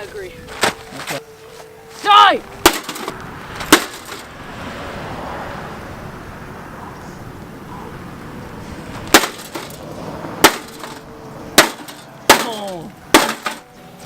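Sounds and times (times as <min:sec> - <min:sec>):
heavy tool striking computer case: 0:02.6 - 0:04.3, 0:09.1 - 0:09.8, 0:10.4 - 0:11.0, 0:11.6 - 0:13.7.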